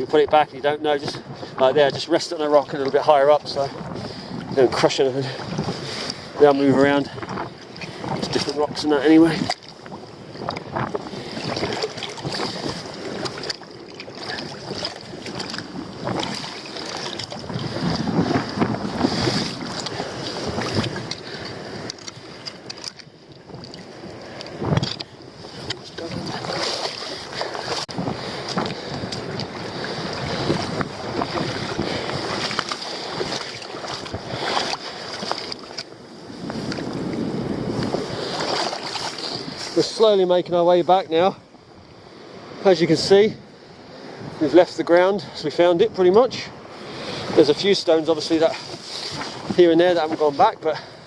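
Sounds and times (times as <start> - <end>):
seawater lapping on rocks: 0.0 - 41.3, 44.0 - 51.0
wind buffeting microphone: 0.0 - 51.0.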